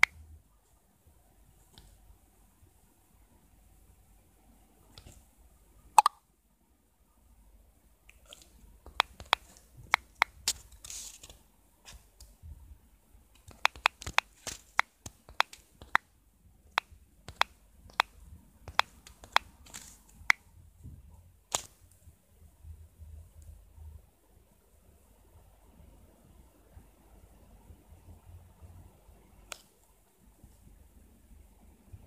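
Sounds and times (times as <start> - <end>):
soft hissy sounds: 0.0 - 32.0
sharp clicks: 8.9 - 10.6, 13.4 - 16.1.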